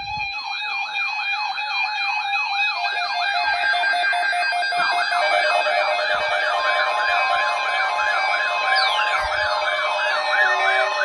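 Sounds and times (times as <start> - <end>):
rising yelp siren sweep: 2.8 - 11.0
pulsing beep: 2.9 - 11.0
steady electronic tones: 4.2 - 11.0.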